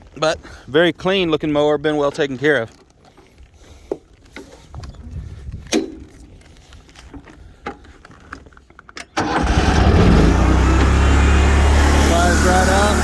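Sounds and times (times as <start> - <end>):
mower engine starting and running: 9.1 - 13.0.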